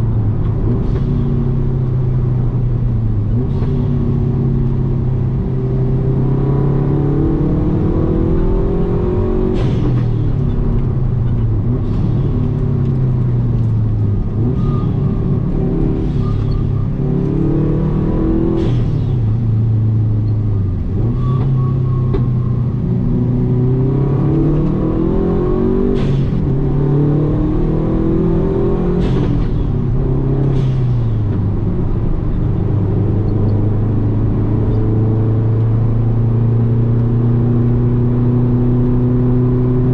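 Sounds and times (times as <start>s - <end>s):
car engine accelerating hard: 0.0s - 39.9s.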